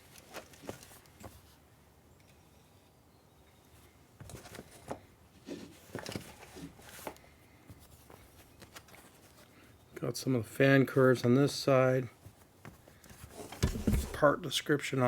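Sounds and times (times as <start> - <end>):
cloth rustling: 0.0 - 1.6, 12.2 - 14.4.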